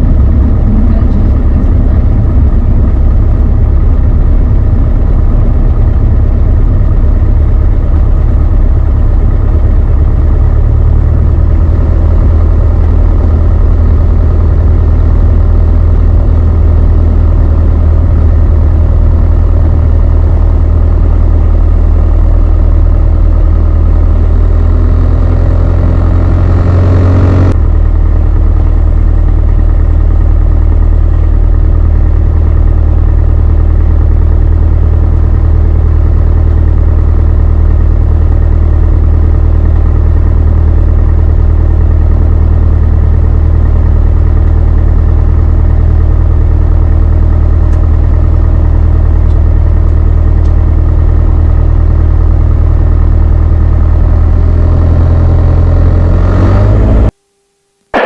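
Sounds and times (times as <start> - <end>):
aircraft engine drone from cabin: 0.0 - 58.0.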